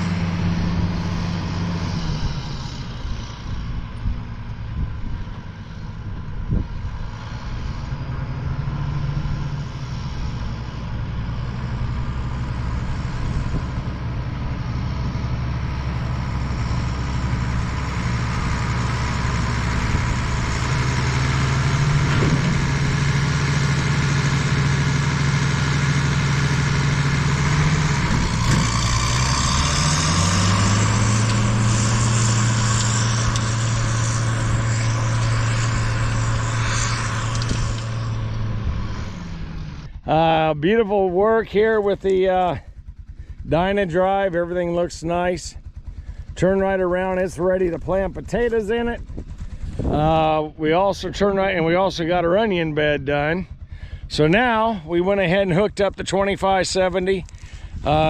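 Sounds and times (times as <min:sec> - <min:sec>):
tractor diesel engine running: 0:00.0 - 0:58.0.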